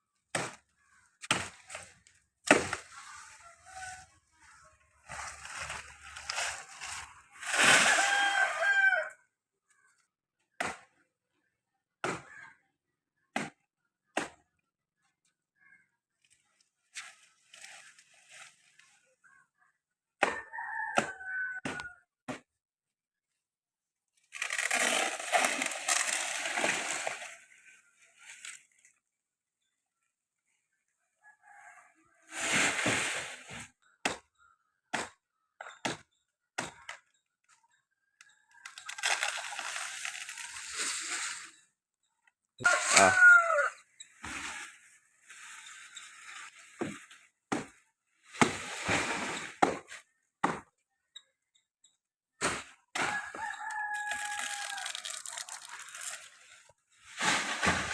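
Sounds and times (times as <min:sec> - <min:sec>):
rooster crowing: 0:07.8 - 0:09.2, 0:42.6 - 0:43.8, 0:53.0 - 0:55.1
fronds rustling and crashing down: 0:24.3 - 0:28.9, 0:38.8 - 0:41.5, 0:53.1 - 0:57.9.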